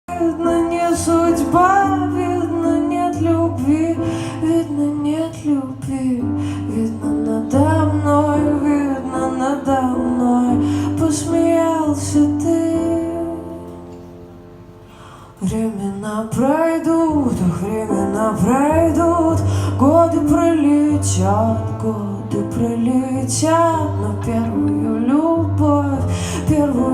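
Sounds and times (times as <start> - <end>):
woman singing: 0.0 - 14.0, 15.4 - 26.9
bass line: 17.1 - 26.9.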